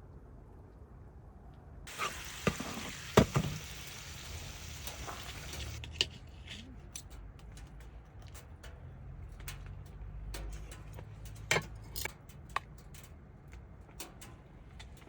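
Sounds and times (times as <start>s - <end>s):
food sizzling in frying pan: 1.9s - 5.8s.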